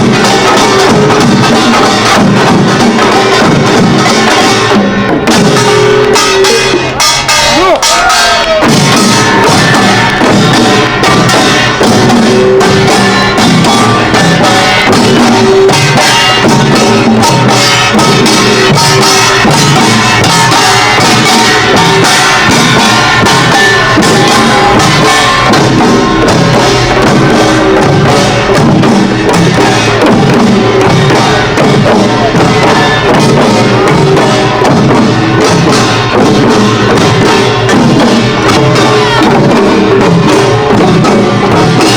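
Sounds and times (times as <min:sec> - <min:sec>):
barrel drums: 0:00.0 - 0:41.9
clanging small gongs: 0:00.0 - 0:41.9
hourglass drums: 0:00.0 - 0:41.9.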